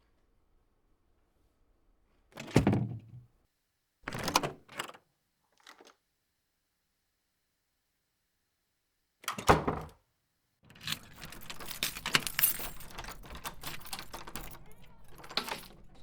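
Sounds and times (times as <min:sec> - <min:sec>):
door shutting with heavy thunk: 0:02.5 - 0:03.2, 0:09.4 - 0:10.0.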